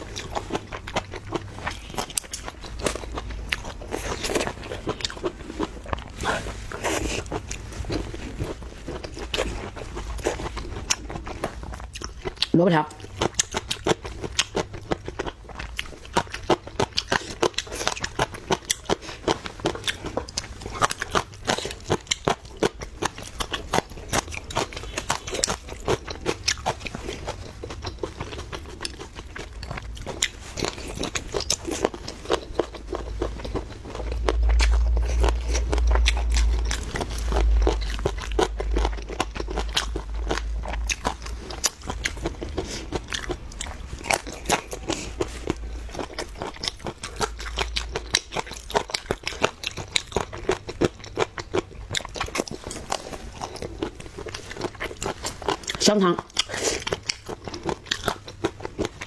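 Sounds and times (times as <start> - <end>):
person chewing crunchy food: 0.0 - 59.0
deep rumble: 32.0 - 50.2.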